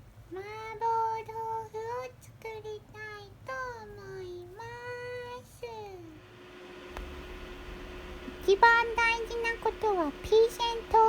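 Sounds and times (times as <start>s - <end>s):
high child-like voice singing: 0.3s - 6.2s.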